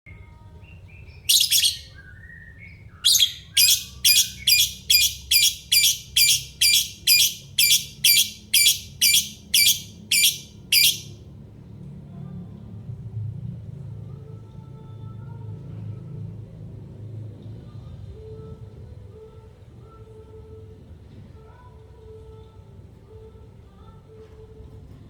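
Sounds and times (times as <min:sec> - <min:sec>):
lovebird chirping: 0:01.0 - 0:02.1, 0:03.0 - 0:11.1.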